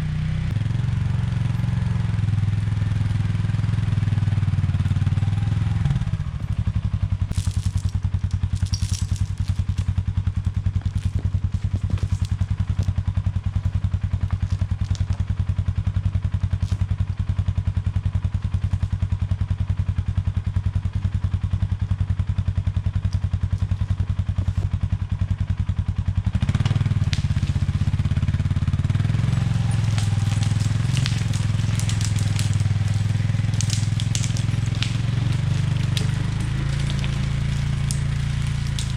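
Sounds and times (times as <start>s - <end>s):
utility vehicle engine running: 0.0s - 38.9s
crackling and crunching: 7.2s - 13.0s, 14.2s - 15.4s, 16.6s - 16.9s, 26.6s - 38.9s.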